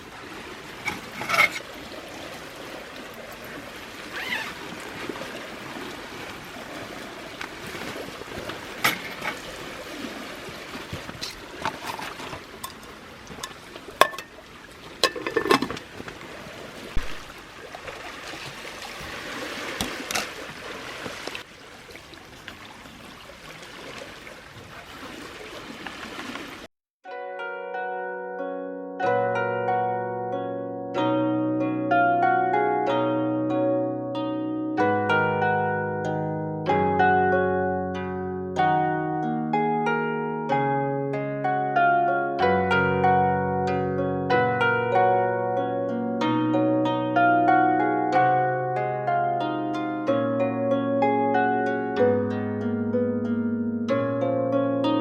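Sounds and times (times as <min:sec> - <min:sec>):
water trickling and splashing: 0:00.0 - 0:26.7.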